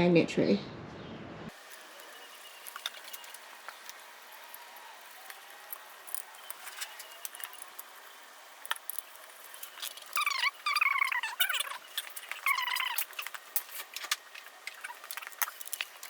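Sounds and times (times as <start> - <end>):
high-pitched animal calls: 9.4 - 16.0.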